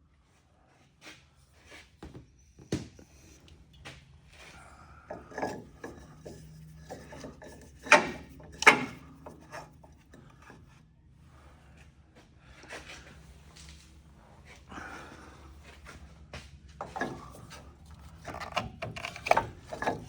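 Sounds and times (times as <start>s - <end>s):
rubbing and scraping on metal parts: 5.1s - 10.9s, 16.8s - 20.0s.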